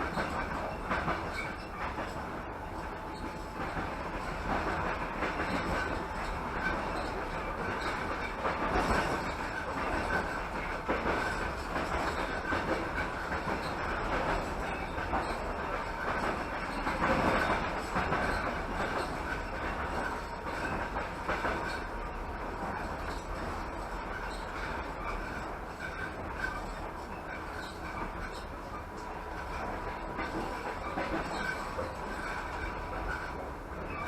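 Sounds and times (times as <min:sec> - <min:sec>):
train wheels rumbling on rails: 0:00.0 - 0:34.0
wheels clacking over rail joints: 0:22.6 - 0:34.0.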